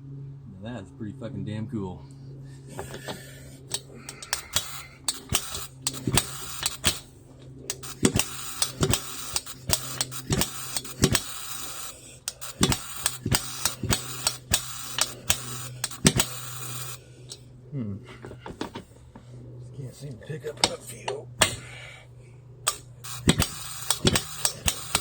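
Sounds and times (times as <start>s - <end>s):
steady low hum: 0.0s - 25.0s
jackhammer bangs: 22.7s - 25.0s.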